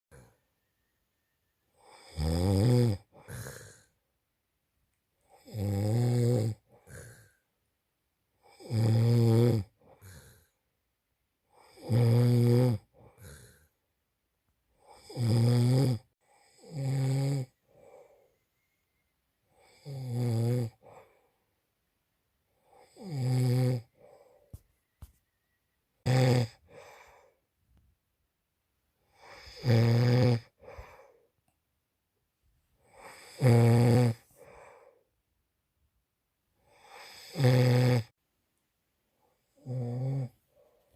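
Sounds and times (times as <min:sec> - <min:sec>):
man snoring: 0:01.8 - 0:03.9, 0:05.3 - 0:07.4, 0:08.4 - 0:10.6, 0:11.5 - 0:13.7, 0:14.8 - 0:18.0, 0:19.6 - 0:21.2, 0:22.6 - 0:24.4, 0:26.0 - 0:27.4, 0:29.1 - 0:31.1, 0:32.8 - 0:34.9, 0:36.7 - 0:38.1, 0:39.5 - 0:40.4.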